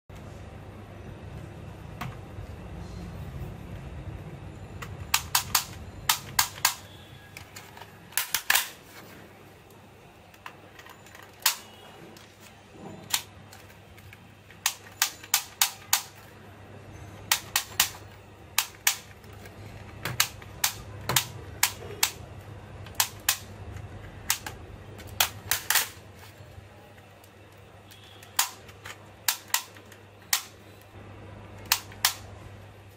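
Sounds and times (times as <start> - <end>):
toy shotgun clicking: 5.1 - 6.9, 14.6 - 16.2, 17.3 - 19.1, 20.2 - 22.2, 22.9 - 23.5, 24.2 - 26.0, 28.0 - 30.5, 31.6 - 32.3.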